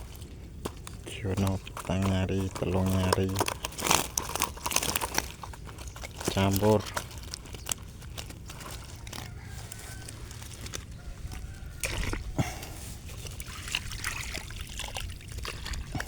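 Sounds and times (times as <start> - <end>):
water sloshing and dribbling: 0.0 - 16.0
small splashes and clicks: 13.1 - 16.0.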